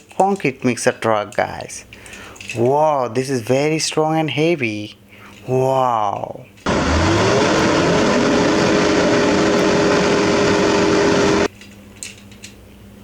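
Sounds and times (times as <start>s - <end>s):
engine-like running hum: 6.7s - 11.5s.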